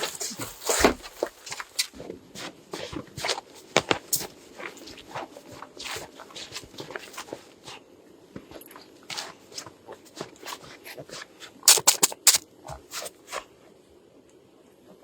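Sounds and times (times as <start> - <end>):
crunching footsteps: 0.0 - 1.9, 11.7 - 12.4.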